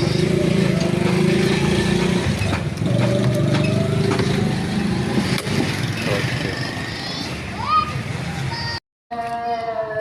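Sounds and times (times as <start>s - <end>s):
sharp clicks and knocks: 0.7s - 4.4s.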